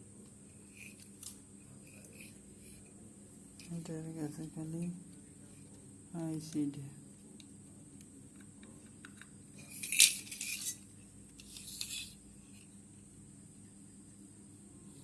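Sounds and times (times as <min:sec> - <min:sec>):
small hard parts clinking: 0:09.0 - 0:12.2.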